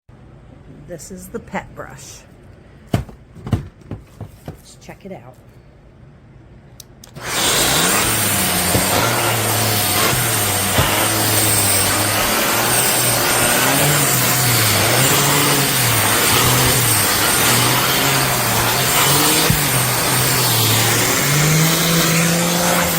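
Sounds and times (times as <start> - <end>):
upright vacuum cleaner running: 7.2 - 22.9.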